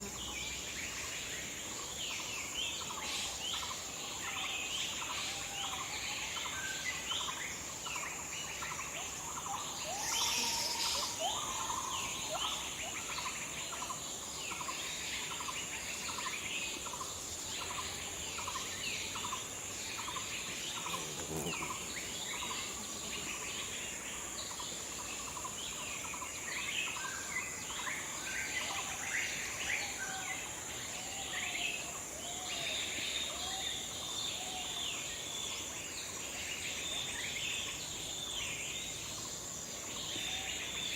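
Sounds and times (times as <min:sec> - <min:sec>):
high insect drone: 0:00.0 - 0:40.9
birds chirping: 0:15.6 - 0:27.9.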